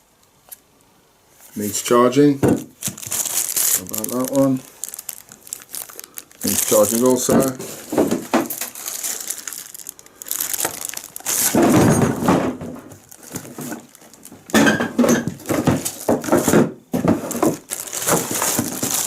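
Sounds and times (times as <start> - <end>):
hard items knocking: 2.4 - 4.2, 6.5 - 8.8, 10.6 - 19.0
packaging rustling: 2.5 - 19.0.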